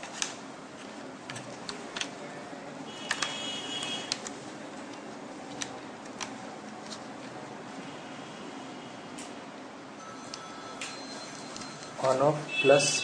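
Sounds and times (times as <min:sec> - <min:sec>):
clicks and taps of laptop parts: 0:03.0 - 0:07.0.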